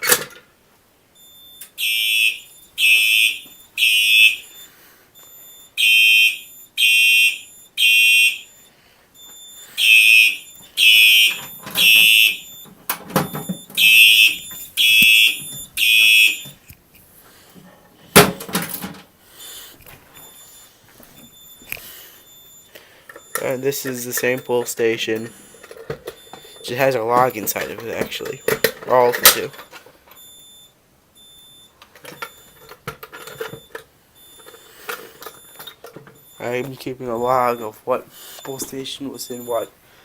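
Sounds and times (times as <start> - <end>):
fire alarm horn blasts: 1.2 - 4.7, 5.5 - 8.7, 9.8 - 12.6, 13.2 - 16.6.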